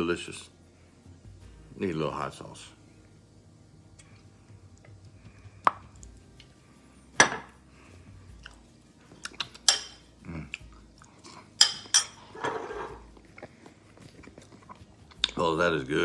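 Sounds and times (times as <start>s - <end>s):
utensils clinking against dish: 9.2s - 10.1s, 11.6s - 13.1s.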